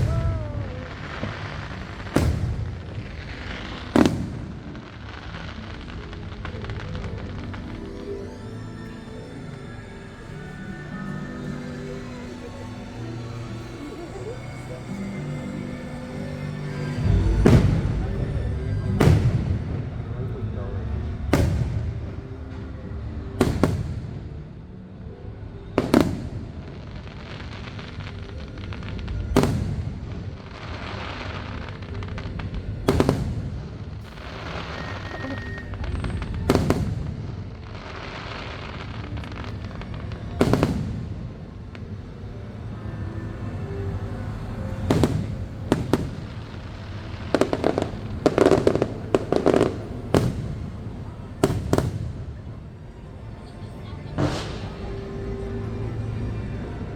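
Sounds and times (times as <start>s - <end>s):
fireworks bangs: 0.0s - 24.4s, 25.8s - 53.1s, 54.0s - 55.6s
fireworks crackling: 0.0s - 56.9s.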